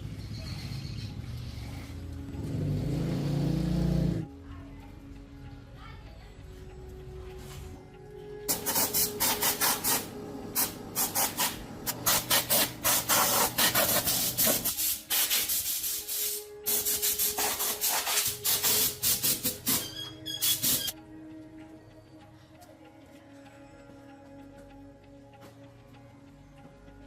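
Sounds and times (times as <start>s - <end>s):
hand sanding rough strokes: 10.6s - 19.8s.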